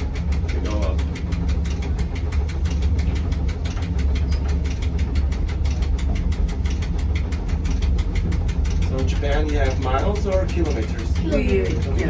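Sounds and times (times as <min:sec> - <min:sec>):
fast even ticking: 0:00.0 - 0:12.0
railcar low drone: 0:00.0 - 0:12.0.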